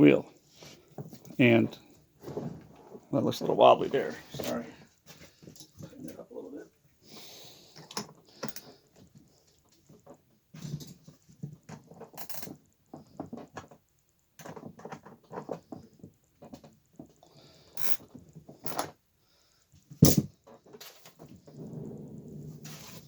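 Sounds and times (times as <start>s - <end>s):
small metal clicks and knocks: 7.8s - 8.8s, 9.6s - 17.2s, 17.8s - 19.0s.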